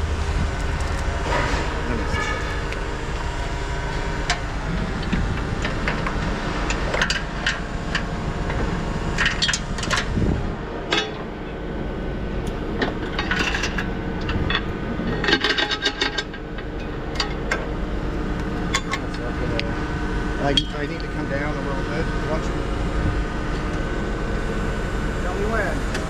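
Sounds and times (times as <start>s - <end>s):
engine running steadily: 0.0s - 26.0s.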